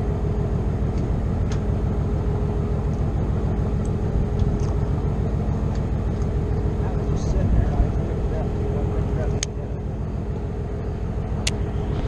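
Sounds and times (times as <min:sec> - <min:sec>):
boat motor rumbling: 0:00.0 - 0:12.0.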